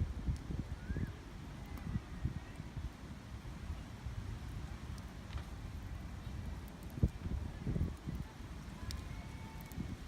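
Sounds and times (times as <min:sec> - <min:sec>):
wind rumble on microphone: 0:00.0 - 0:10.0
faint clicks: 0:06.6 - 0:07.2, 0:07.8 - 0:10.0.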